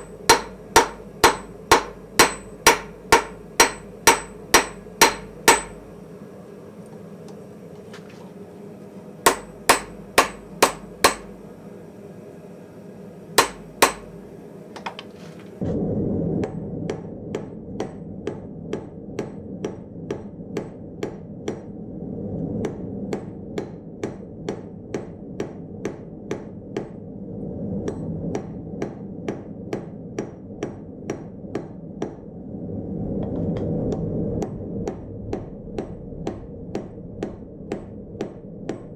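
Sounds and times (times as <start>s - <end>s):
hammer striking anvil: 0.0s - 5.9s, 9.3s - 11.4s, 13.4s - 14.2s.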